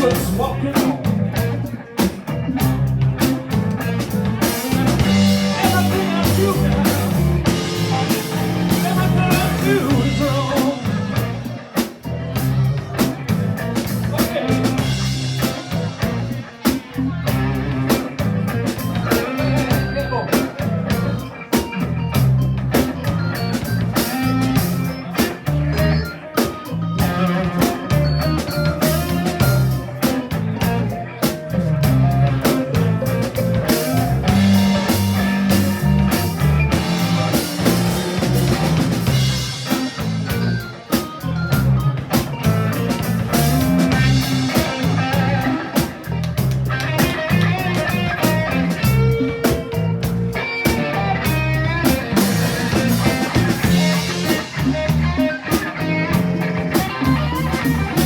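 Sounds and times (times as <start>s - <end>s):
blues band playing: 0.0s - 58.0s.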